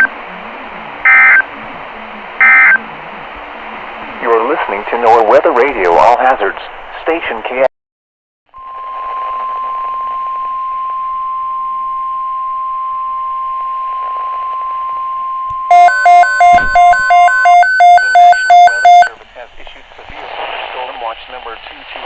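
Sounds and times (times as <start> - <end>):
rapid electronic beeping: 1.0 - 1.5, 2.4 - 2.8, 15.6 - 19.2
steady warning alarm tone: 2.4 - 2.8, 8.6 - 19.2.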